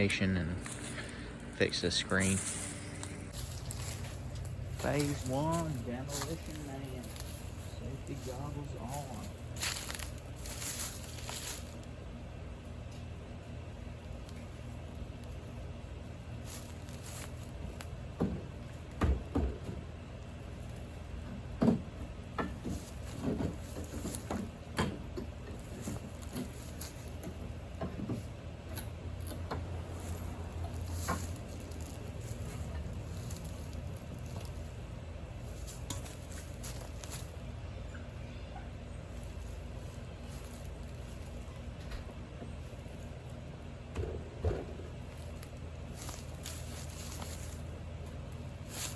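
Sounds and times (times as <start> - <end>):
rustling: 2.3 - 11.9, 16.3 - 17.9, 22.5 - 28.3, 29.6 - 37.8, 38.8 - 41.8, 44.8 - 48.9.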